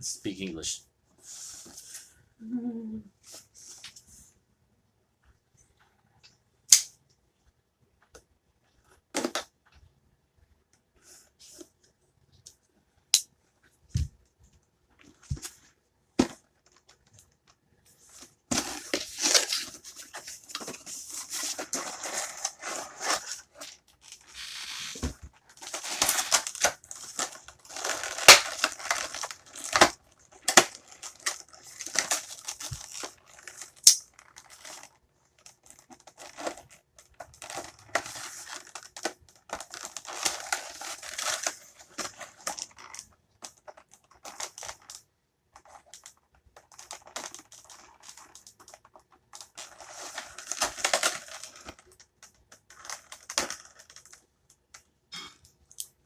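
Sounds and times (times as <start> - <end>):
plastic and paper crinkling: 15.0 - 54.8.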